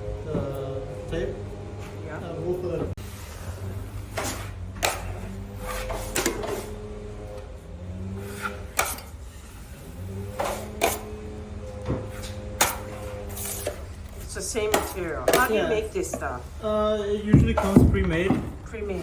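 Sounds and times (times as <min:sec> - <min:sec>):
steady low hum: 0:00.0 - 0:19.0
drywall knife scraping: 0:03.1 - 0:07.0, 0:08.1 - 0:11.2, 0:12.1 - 0:16.4.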